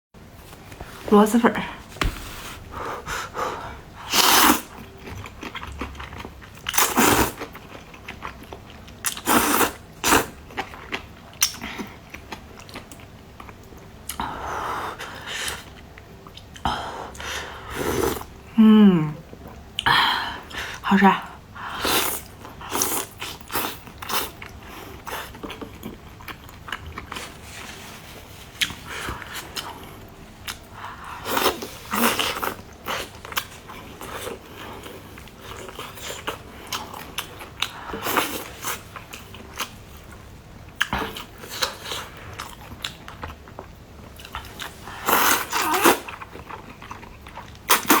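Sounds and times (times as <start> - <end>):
person chewing and crunching: 4.2 - 14.2, 22.0 - 27.7, 28.6 - 48.0.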